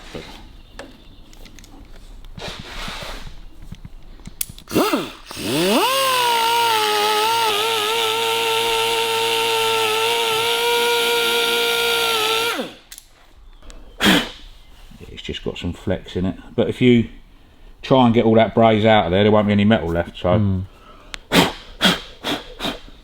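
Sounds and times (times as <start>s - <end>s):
power tool motor spinning: 4.6s - 12.9s.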